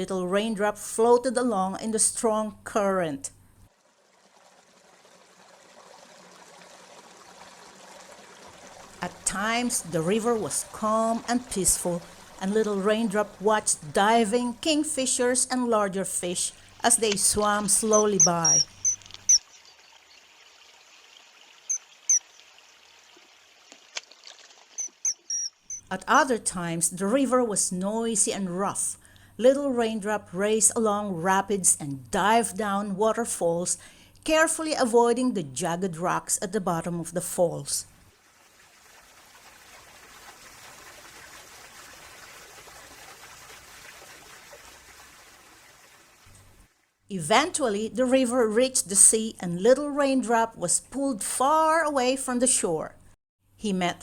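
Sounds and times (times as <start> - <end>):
river water trickling: 3.4 - 15.8, 16.5 - 25.9, 38.0 - 47.0
short high bird chirps: 17.8 - 20.0, 24.8 - 25.8.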